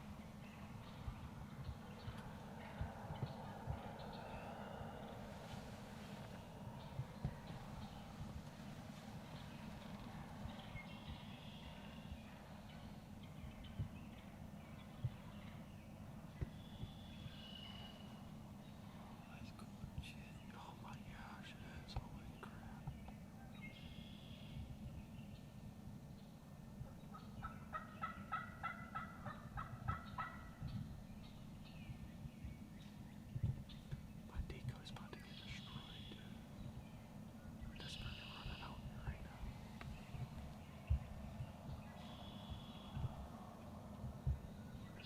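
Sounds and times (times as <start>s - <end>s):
faint bird chirps and trills: 0.0s - 45.0s
low steady rumble: 0.0s - 45.0s
wild turkey gobbling: 27.1s - 30.6s.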